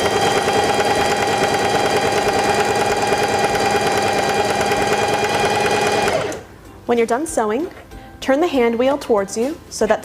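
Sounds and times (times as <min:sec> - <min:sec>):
sewing machine stitching: 0:00.0 - 0:06.4.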